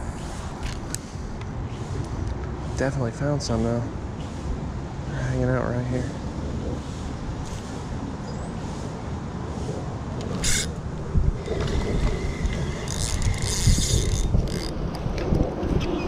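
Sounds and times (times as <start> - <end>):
wind rumbling on microphone: 0.0 - 16.0.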